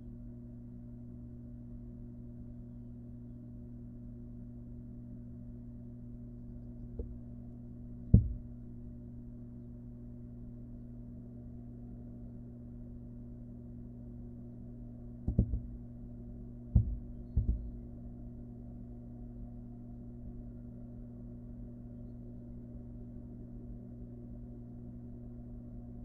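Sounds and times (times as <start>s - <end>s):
steady low hum: 0.0s - 26.0s
dull knocks in nest box: 8.2s - 8.5s, 15.3s - 15.8s, 16.8s - 17.8s.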